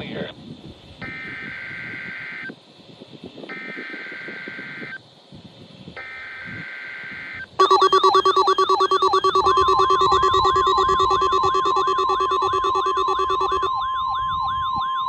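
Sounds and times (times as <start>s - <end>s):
buzzy digital data bursts: 7.6s - 13.7s
warbling electronic alert tone: 7.6s - 13.7s.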